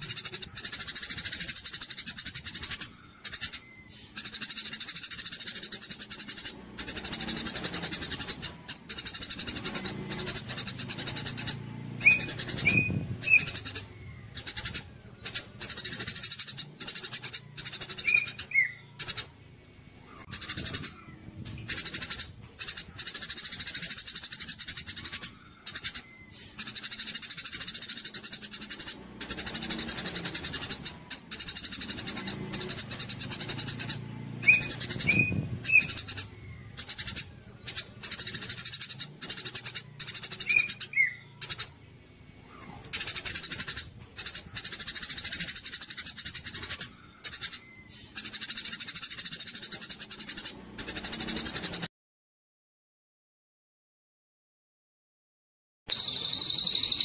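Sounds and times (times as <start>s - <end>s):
low whistled bird notes: 0.0s - 19.3s, 20.0s - 41.7s, 55.9s - 57.0s
songbird chattering trill: 0.0s - 51.9s, 55.9s - 57.0s.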